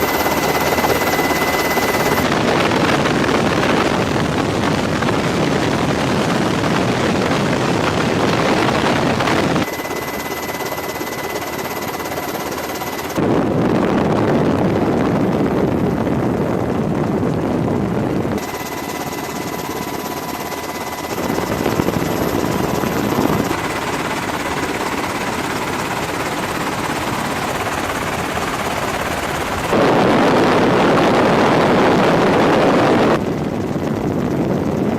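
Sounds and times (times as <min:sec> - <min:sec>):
aircraft engine noise: 0:00.0 - 0:34.9.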